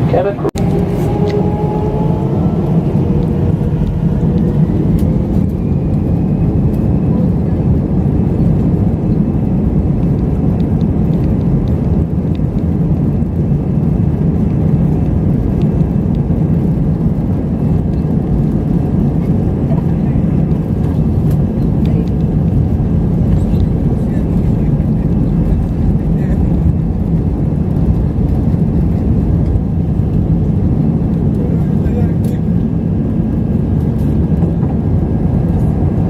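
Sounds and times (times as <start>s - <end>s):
faint rising whine: 0.0s - 7.3s
jet engine cabin rumble: 0.0s - 36.0s.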